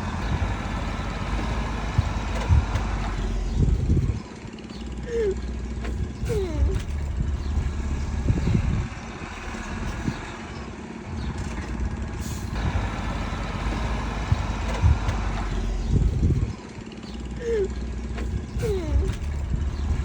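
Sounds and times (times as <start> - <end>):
heavy diesel engine under load: 0.0 - 20.0.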